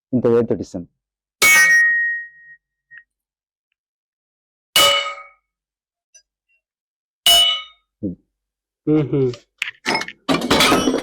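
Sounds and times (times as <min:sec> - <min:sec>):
metal pipe clang: 0:01.4 - 0:02.5, 0:04.8 - 0:05.5, 0:07.3 - 0:07.9, 0:09.9 - 0:11.0.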